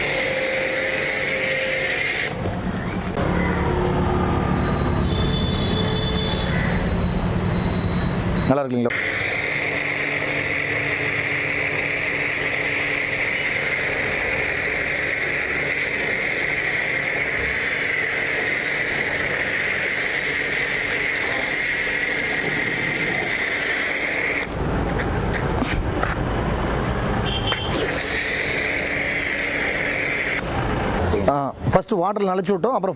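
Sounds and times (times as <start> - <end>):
water spray hissing: 0.0 - 2.6, 8.9 - 24.8, 27.2 - 31.0
pressure washer motor whine: 0.0 - 25.6, 26.2 - 31.3.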